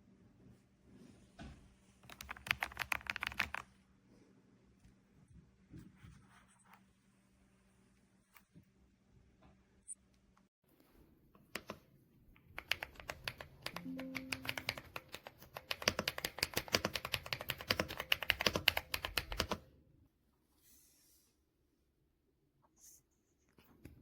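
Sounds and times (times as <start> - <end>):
mechanical keyboard typing: 2.0 - 3.7, 12.4 - 19.6.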